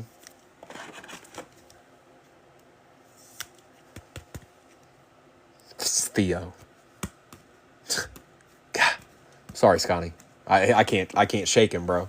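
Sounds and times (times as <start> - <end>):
cards rustling: 0.1 - 1.8.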